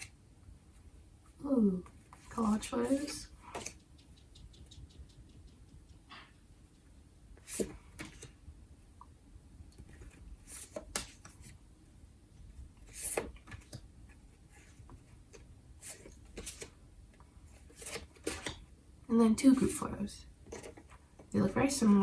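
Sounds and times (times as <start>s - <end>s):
paper prints rustling: 1.8s - 3.8s, 12.8s - 16.8s, 17.5s - 18.6s, 20.4s - 22.0s.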